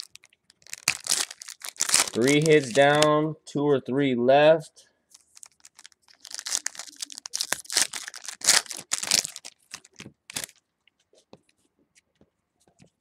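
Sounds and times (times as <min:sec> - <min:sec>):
foil wrapper crinkling and tearing: 0:00.0 - 0:03.1, 0:05.2 - 0:10.6.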